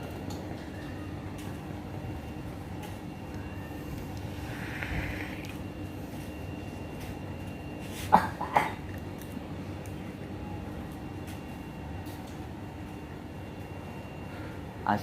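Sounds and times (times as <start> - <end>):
elderly man coughing: 8.1 - 8.8.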